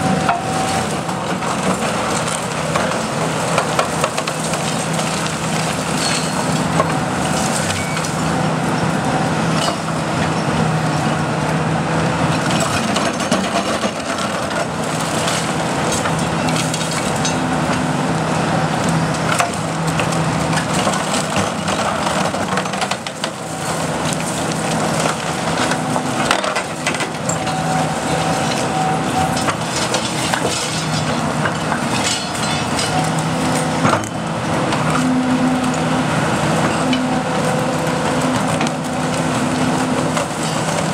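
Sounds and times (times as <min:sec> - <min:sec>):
excavator engine and hydraulics: 0:00.0 - 0:40.9
debris cracking and splintering: 0:00.3 - 0:08.3, 0:19.2 - 0:35.8.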